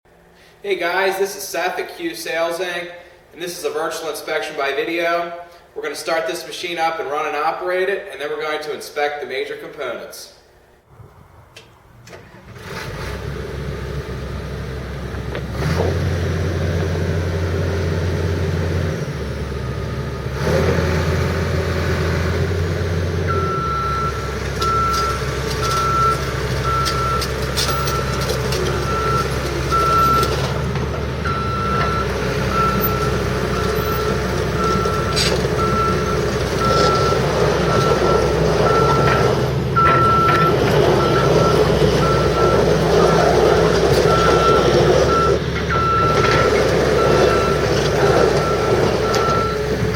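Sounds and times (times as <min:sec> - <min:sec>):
excavator diesel engine running: 0:10.8 - 0:49.9
travel alarm beeping: 0:23.3 - 0:30.4, 0:31.2 - 0:43.2, 0:44.0 - 0:46.4, 0:47.0 - 0:49.7.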